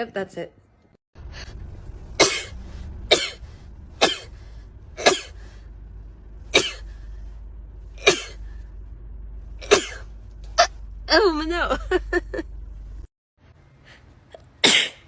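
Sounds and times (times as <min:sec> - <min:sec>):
woman sneezing: 0:14.6 - 0:15.0.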